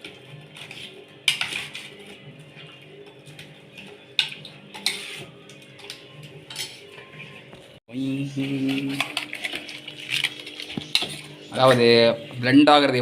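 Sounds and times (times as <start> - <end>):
metal spoon scraping a bowl: 0.0 - 2.7, 3.3 - 7.5, 8.4 - 12.0.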